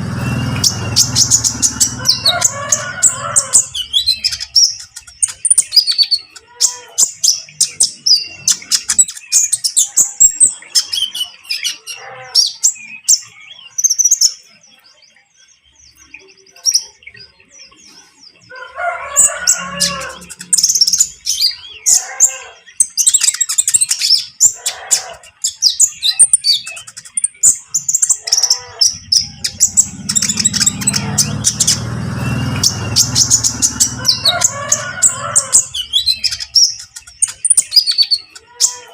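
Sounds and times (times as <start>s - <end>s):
bird chirping rapidly: 0.0s - 38.9s.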